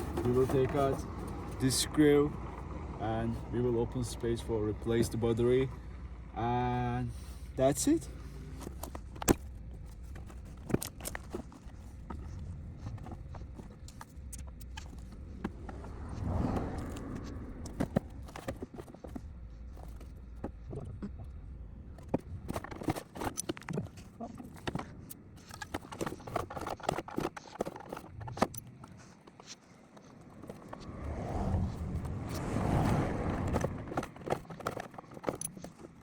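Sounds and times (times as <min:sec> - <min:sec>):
low steady rumble: 0:00.0 - 0:22.8, 0:30.2 - 0:34.1
clicks and knocks of hand work: 0:22.0 - 0:31.0, 0:32.0 - 0:36.0.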